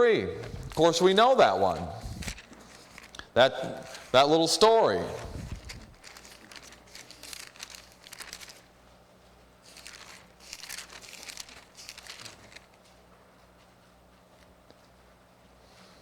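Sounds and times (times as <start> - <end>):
faint low hum: 0.0 - 16.0
thin pages rustling: 0.3 - 9.0, 9.6 - 13.1.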